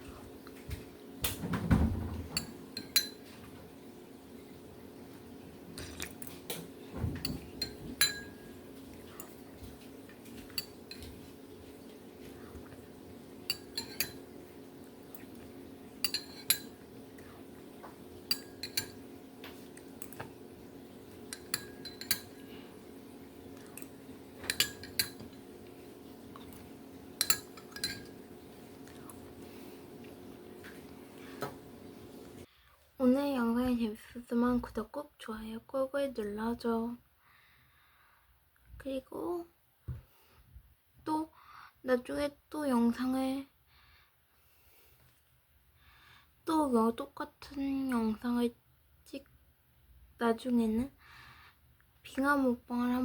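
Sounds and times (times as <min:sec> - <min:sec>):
faint steady hum: 0:00.0 - 0:53.0.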